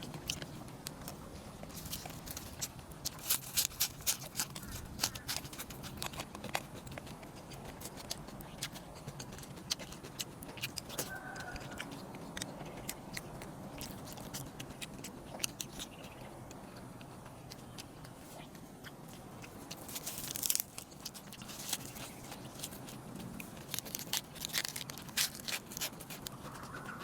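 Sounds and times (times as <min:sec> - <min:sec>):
crunching and chewing: 0:00.0 - 0:27.0
crisp clicks: 0:19.4 - 0:27.0.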